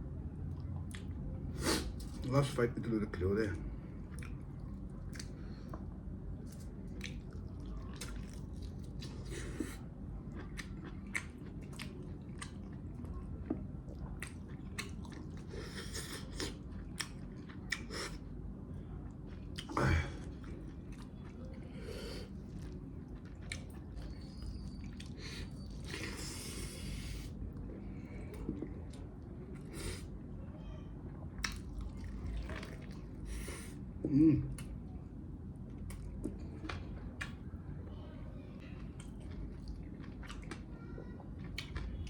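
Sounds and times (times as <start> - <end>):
person chewing: 4.1 - 5.8, 6.4 - 18.3, 19.2 - 30.1, 31.4 - 33.7, 38.9 - 40.6, 41.4 - 41.9.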